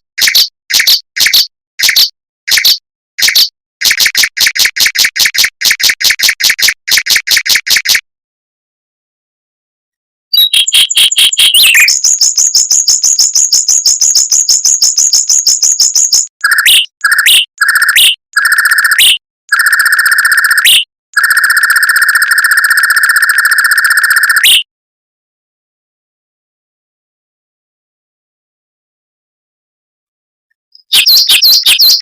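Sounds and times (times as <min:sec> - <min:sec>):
mockingbird singing trills: 0:10.3 - 0:18.2, 0:30.8 - 0:32.0.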